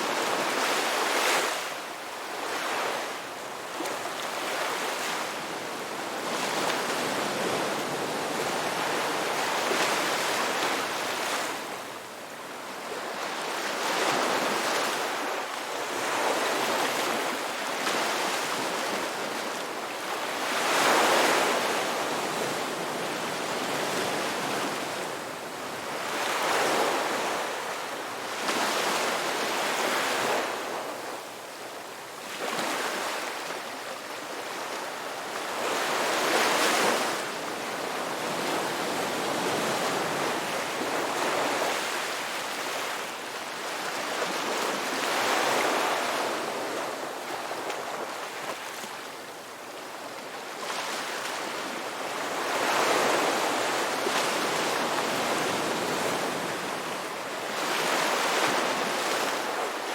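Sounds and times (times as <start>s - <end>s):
ocean waves breaking on shore: 0.0s - 31.6s, 32.2s - 59.9s.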